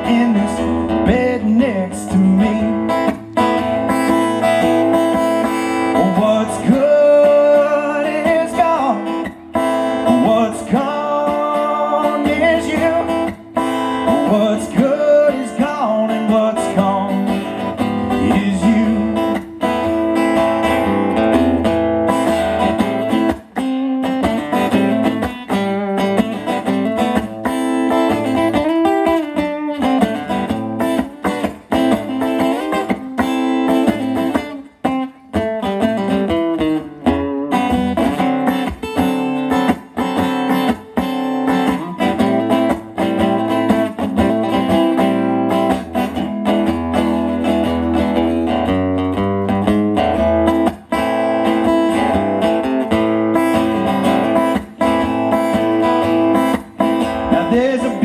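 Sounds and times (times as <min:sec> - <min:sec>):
picked guitar notes: 0:00.0 - 0:58.0
steady low bass: 0:17.5 - 0:19.4.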